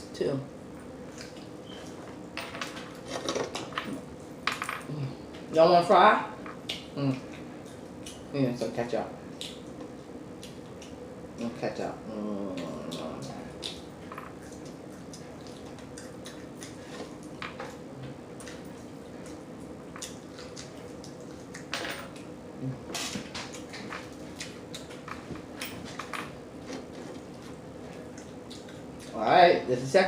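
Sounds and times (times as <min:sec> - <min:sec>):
faint steady hum: 0:00.0 - 0:30.0
chewing clicks and smacks: 0:07.6 - 0:08.3, 0:09.4 - 0:11.0, 0:12.6 - 0:17.8, 0:18.4 - 0:22.3, 0:23.4 - 0:25.2, 0:27.2 - 0:29.2.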